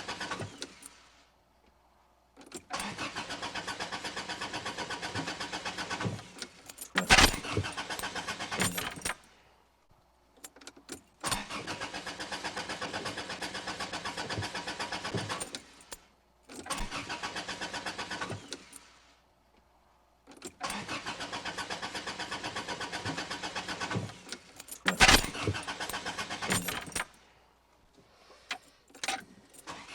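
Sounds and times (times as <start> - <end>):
car starter cranking: 2.5 - 9.2, 11.2 - 15.6, 16.6 - 18.8, 20.5 - 27.1, 28.4 - 29.9.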